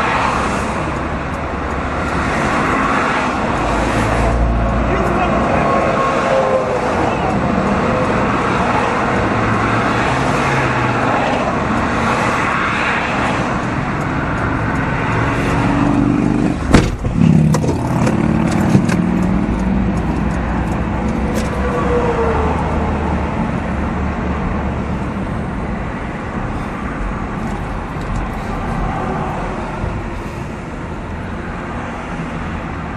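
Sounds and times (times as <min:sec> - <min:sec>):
tyre and engine road noise: 0:00.0 - 0:32.9
sharp loud knock: 0:16.7 - 0:17.8.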